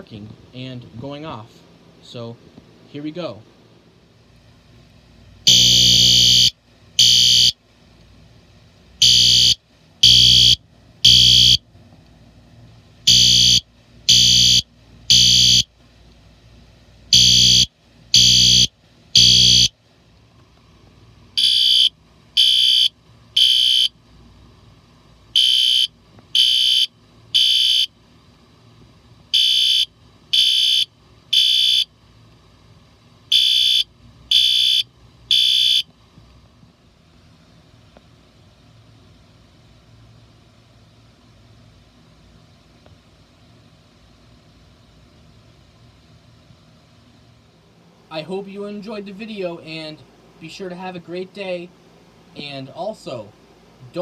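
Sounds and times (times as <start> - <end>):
loud harsh fire alarm horn: 5.5 - 7.6, 9.0 - 11.6, 13.1 - 15.7, 17.1 - 19.7, 21.4 - 23.9, 25.4 - 27.9, 29.4 - 31.9, 33.3 - 35.8
quieter thin alarm horn: 5.5 - 7.6, 9.0 - 11.6, 13.1 - 15.7, 17.1 - 19.7, 21.4 - 24.0, 25.4 - 27.9, 29.4 - 31.9, 33.3 - 35.9.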